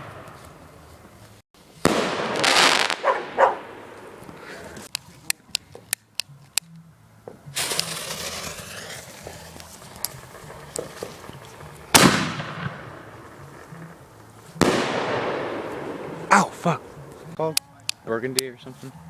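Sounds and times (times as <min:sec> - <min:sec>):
fireworks cracking: 0:01.8 - 0:05.6, 0:07.5 - 0:18.5
firework bursts with hiss: 0:07.6 - 0:13.8.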